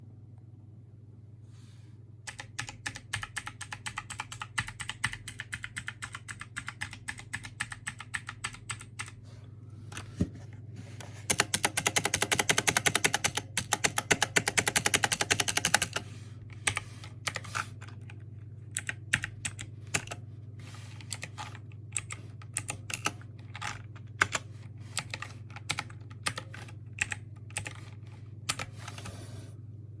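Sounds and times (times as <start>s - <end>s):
mechanical keyboard typing: 2.3s - 9.2s, 11.3s - 18.2s, 18.8s - 20.2s, 20.8s - 29.2s.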